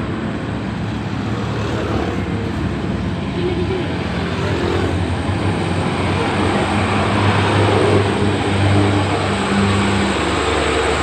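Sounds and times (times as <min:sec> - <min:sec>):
road and traffic noise: 0:00.0 - 0:11.0.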